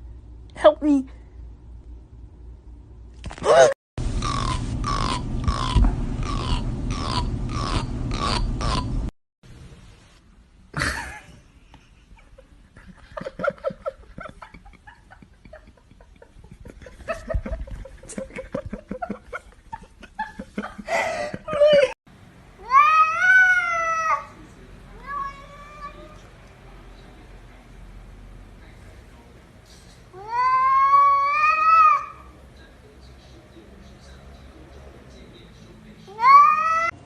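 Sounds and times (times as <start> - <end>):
cats meowing: 25.0 - 26.2, 30.2 - 32.2, 36.1 - 37.0.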